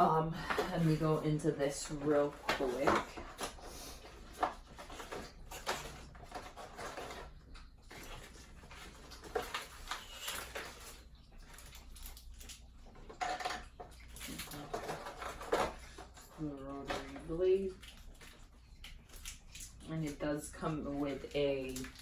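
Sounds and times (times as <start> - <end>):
packaging rustling: 0.0 - 19.8.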